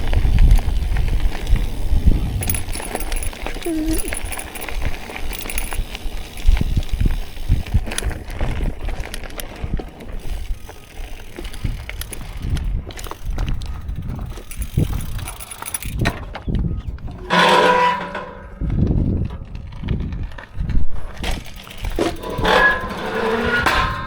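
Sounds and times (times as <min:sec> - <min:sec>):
mountain bike rattling: 0:00.0 - 0:24.0.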